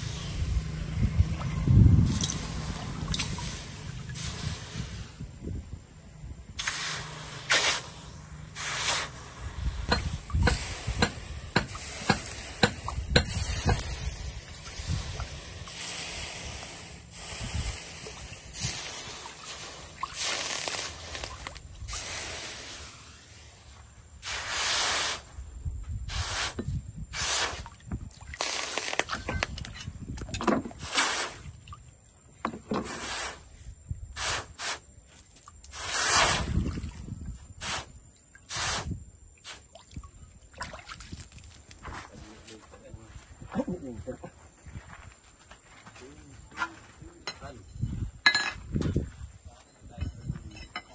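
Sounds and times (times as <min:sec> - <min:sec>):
hot steel hissing in water: 0:02.1 - 0:05.3, 0:06.6 - 0:25.4, 0:26.1 - 0:27.7, 0:30.8 - 0:31.5, 0:32.9 - 0:34.9, 0:35.7 - 0:36.6, 0:37.5 - 0:39.7.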